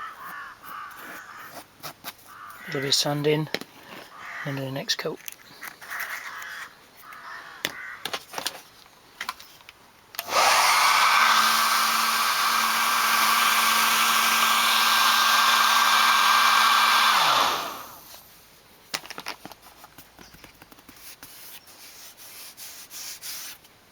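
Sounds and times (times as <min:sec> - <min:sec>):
hairdryer running: 0:10.2 - 0:18.1
hairdryer motor winding down: 0:10.2 - 0:18.2.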